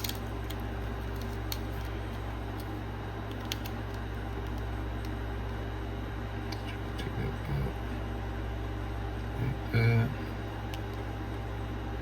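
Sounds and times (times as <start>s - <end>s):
low machine hum: 0.0s - 12.0s.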